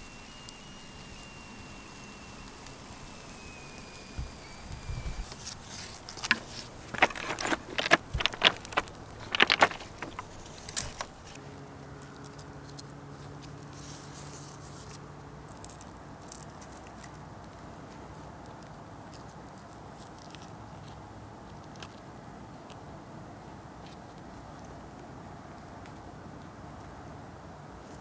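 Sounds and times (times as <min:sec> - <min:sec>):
light clicks taps and scrapes: 0:04.2 - 0:11.4.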